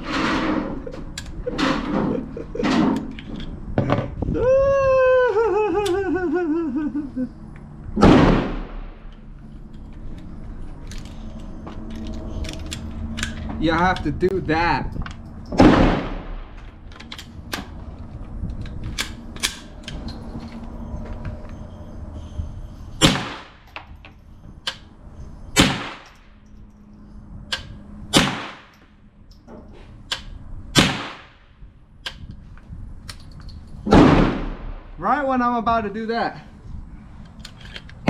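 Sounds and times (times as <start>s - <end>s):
gunshots: 8.0s - 9.0s, 15.6s - 16.6s, 23.0s - 23.6s, 25.6s - 26.1s, 28.1s - 28.7s, 30.8s - 31.4s, 33.9s - 35.0s.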